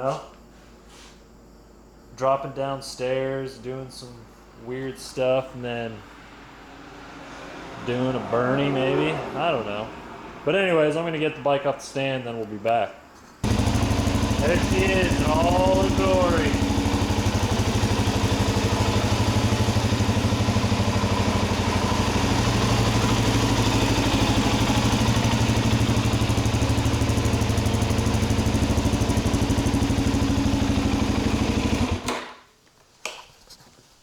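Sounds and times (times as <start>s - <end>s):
motorcycle engine idling: 13.4s - 32.1s.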